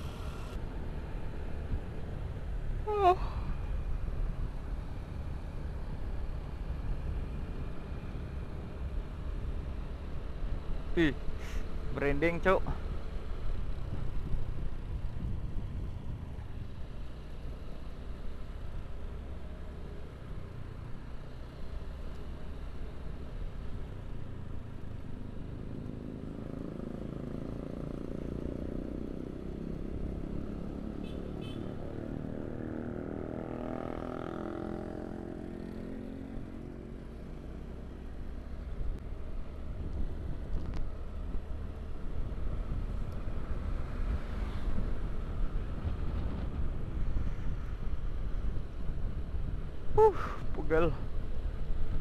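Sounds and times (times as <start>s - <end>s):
motorcycle engine and road rumble: 0.0s - 52.0s
louder engine passing: 29.2s - 37.0s.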